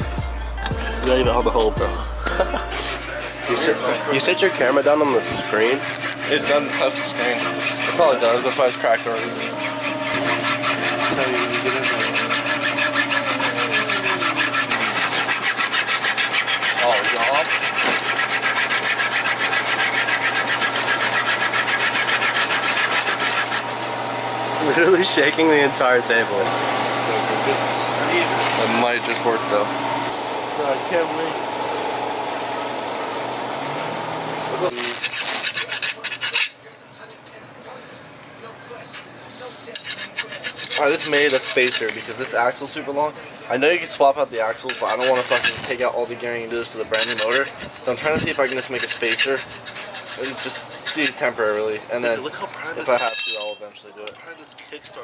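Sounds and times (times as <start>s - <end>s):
hand saw rasping strokes: 2.3s - 23.8s, 34.6s - 36.6s, 39.8s - 42.4s, 44.6s - 45.9s, 46.9s - 51.4s.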